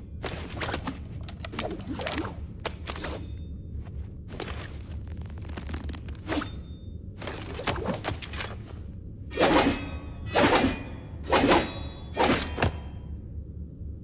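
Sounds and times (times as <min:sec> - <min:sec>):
steady low hum: 0:00.0 - 0:14.0
sword blades clashing: 0:09.3 - 0:13.0.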